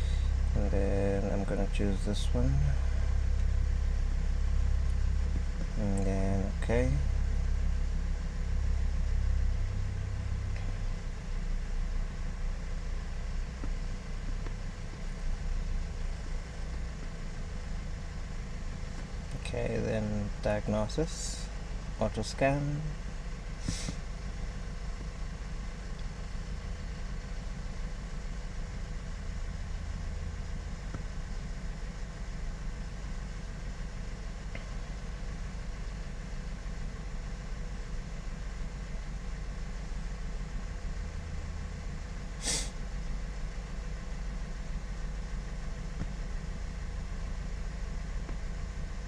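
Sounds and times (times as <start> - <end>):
car engine idling: 0.0 - 49.0.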